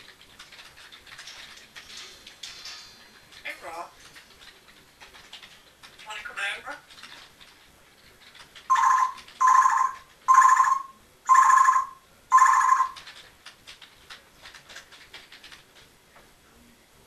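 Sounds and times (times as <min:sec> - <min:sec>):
parrot mimicking electronic beep: 0:08.7 - 0:13.0.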